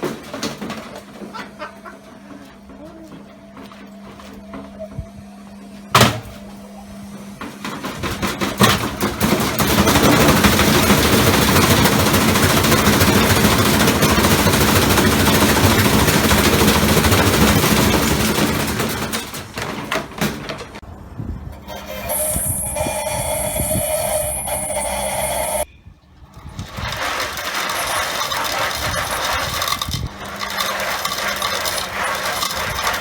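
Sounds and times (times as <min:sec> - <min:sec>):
washing machine banging and rattling: 0:00.0 - 0:01.6, 0:05.9 - 0:06.5, 0:07.4 - 0:20.9.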